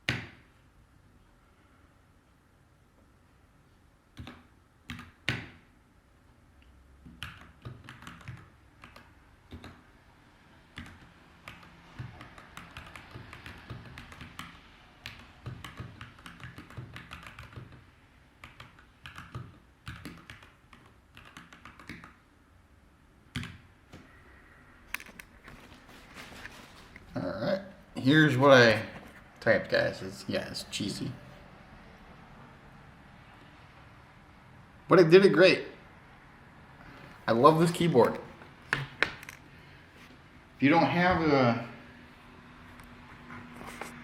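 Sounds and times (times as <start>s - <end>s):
mechanical keyboard typing: 7.2s - 9.8s, 10.7s - 17.8s, 18.4s - 22.2s.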